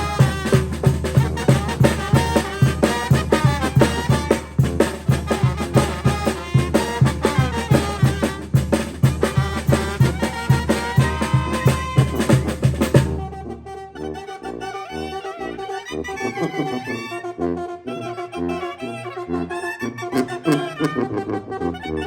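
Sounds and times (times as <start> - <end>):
quick drum beat: 0.0 - 13.2
brass band playing: 0.0 - 22.0.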